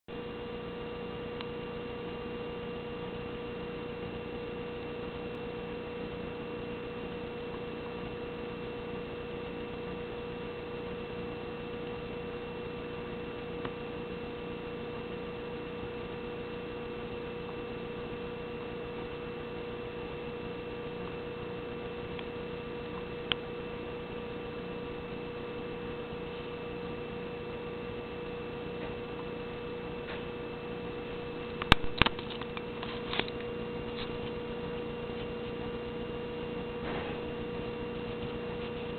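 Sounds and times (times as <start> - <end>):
steady hum with tones: 0.1 - 38.9.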